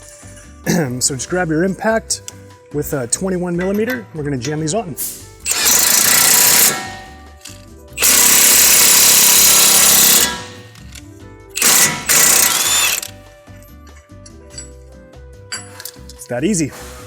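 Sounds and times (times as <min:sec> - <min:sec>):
impact wrench hammering: 0:05.5 - 0:07.4, 0:08.0 - 0:10.9, 0:11.6 - 0:13.1.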